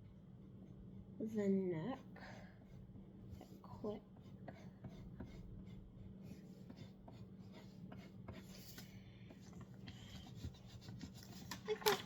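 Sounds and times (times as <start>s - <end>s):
low steady hum: 0.0s - 12.0s
pencil scratching on paper: 2.6s - 11.9s.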